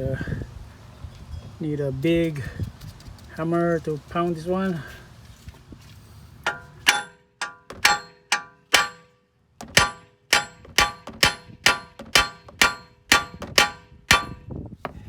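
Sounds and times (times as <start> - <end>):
hammer clanging on steel: 6.5 - 14.5.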